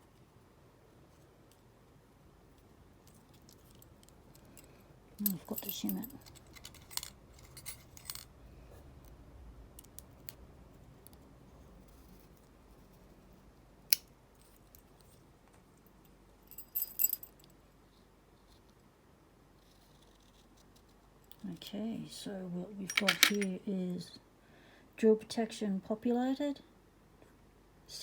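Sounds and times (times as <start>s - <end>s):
padlock parts clicking: 5.2s - 8.3s, 22.9s - 23.5s
ringing metallic clinks: 22.9s - 23.5s.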